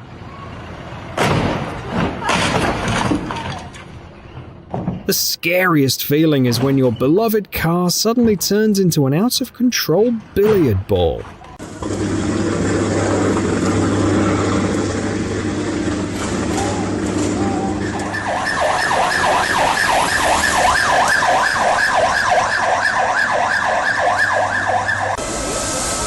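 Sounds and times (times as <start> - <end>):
siren in fast yelp: 17.4 - 25.2.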